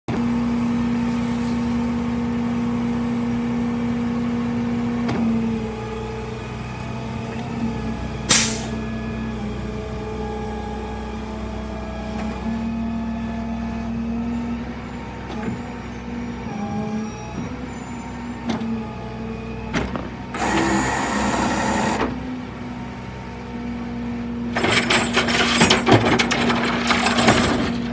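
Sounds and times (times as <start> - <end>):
vehicle engine humming: 0.1 - 27.9
short sharp hiss: 8.3 - 8.8.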